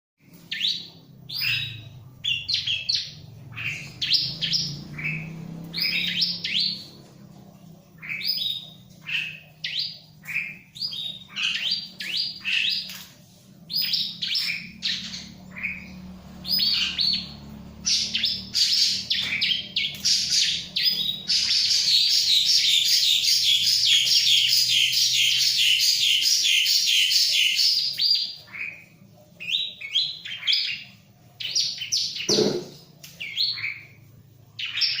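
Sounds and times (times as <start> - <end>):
bird chirping and trilling: 0.2 - 35.0.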